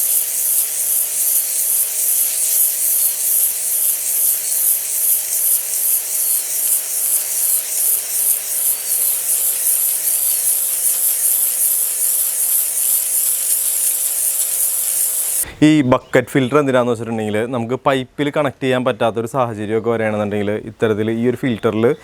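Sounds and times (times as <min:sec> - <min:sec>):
faint motor hum: 0:00.0 - 0:15.5
pressure washer spraying water: 0:00.0 - 0:15.5.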